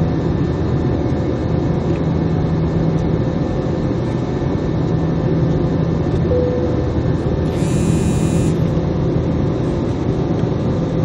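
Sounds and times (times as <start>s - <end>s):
jet engine rumble in cabin: 0.0s - 7.4s
low hum: 7.5s - 8.7s.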